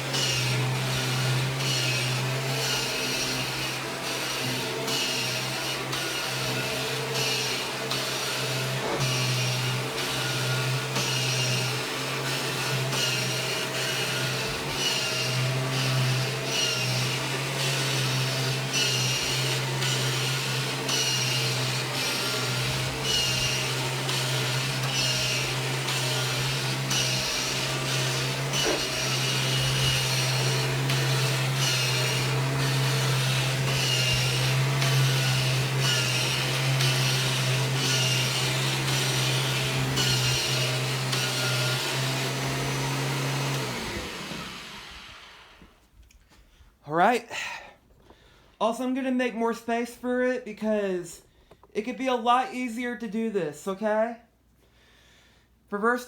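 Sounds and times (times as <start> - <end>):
vacuum cleaner running: 0.0 - 45.9.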